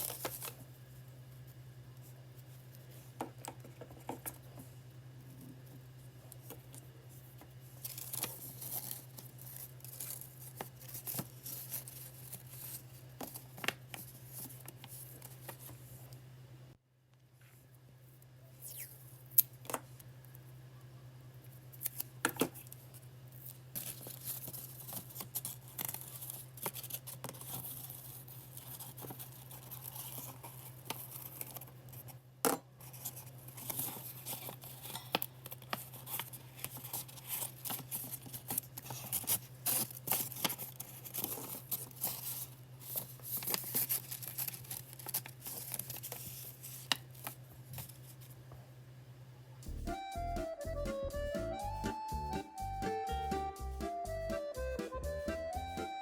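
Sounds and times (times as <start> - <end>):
steady low hum: 46.1 - 55.3.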